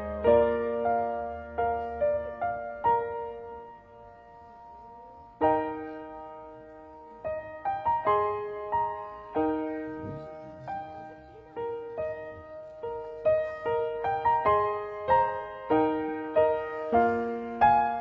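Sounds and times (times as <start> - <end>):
gentle solo piano music: 0.0 - 18.0.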